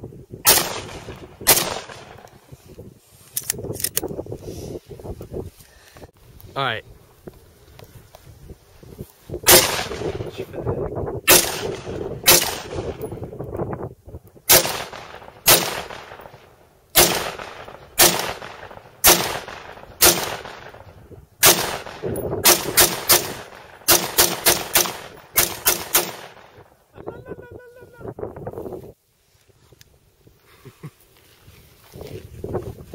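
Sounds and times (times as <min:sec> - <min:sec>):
rifle gunshots with echo: 0:00.4 - 0:02.3, 0:09.5 - 0:10.4, 0:11.3 - 0:13.2, 0:14.5 - 0:26.6.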